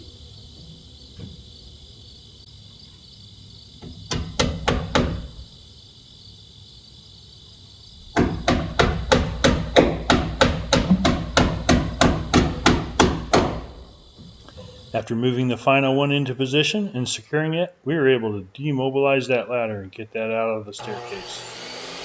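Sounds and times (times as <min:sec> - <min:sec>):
hammer driving nails into wood: 0:03.8 - 0:05.4, 0:08.2 - 0:13.8.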